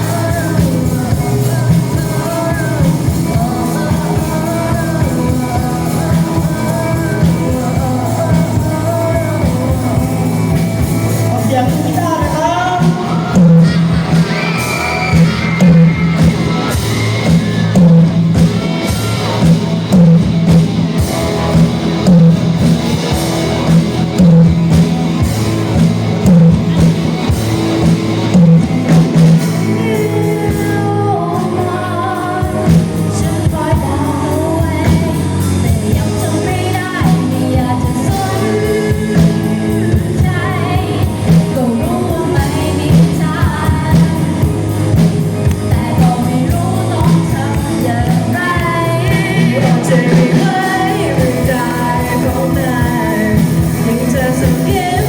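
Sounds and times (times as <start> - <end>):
heavy regular beat: 0.0 - 29.9
rock band playing with singer: 0.0 - 55.0.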